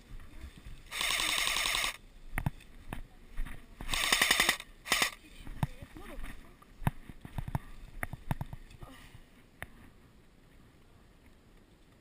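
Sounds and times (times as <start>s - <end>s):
airsoft gun firing full-auto bursts: 0.9s - 2.0s, 3.9s - 5.2s
sharp clicks: 0.9s - 2.6s, 3.8s - 5.7s.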